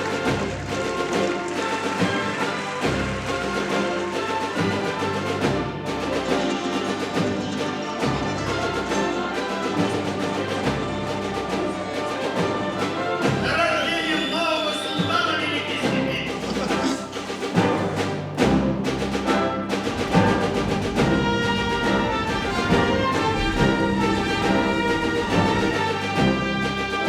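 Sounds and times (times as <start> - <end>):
symphony orchestra playing: 0.0 - 27.0
low drum strokes: 16.4 - 27.0.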